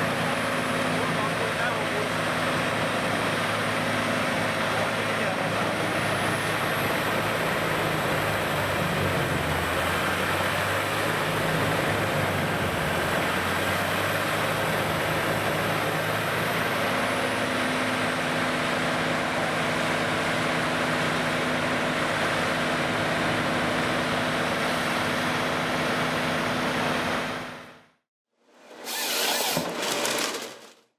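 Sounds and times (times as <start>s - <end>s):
grinder running: 28.8s - 30.8s.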